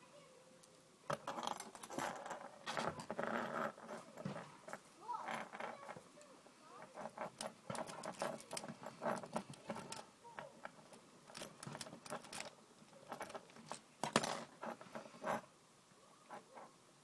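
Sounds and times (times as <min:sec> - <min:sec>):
lock pick clicking and scraping: 0:06.8 - 0:15.4.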